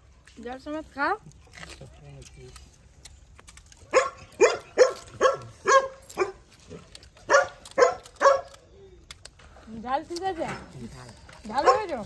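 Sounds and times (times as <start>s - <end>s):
dog barking: 3.9s - 6.5s, 7.3s - 8.6s, 11.5s - 12.0s.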